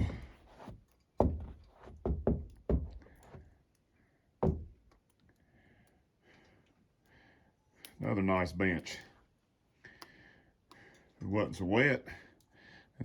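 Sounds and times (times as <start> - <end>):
boots knocking on wooden floorboards: 0.0 - 3.5, 4.4 - 4.8.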